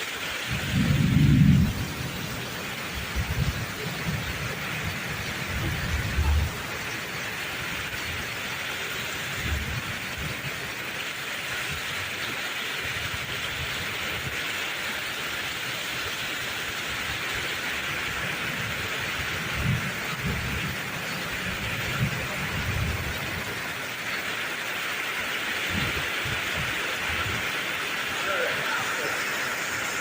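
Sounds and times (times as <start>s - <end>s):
heavy rain pouring: 0.0s - 30.0s
thunder rumbles: 0.5s - 8.5s, 18.0s - 23.7s, 25.6s - 27.5s.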